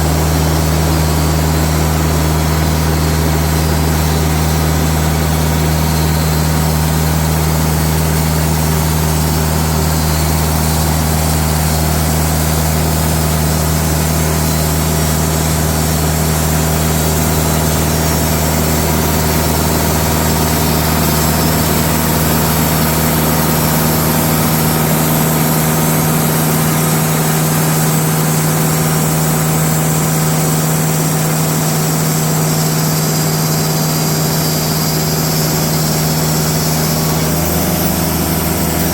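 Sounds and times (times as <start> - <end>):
band sawmill cutting wood: 0.0 - 38.9.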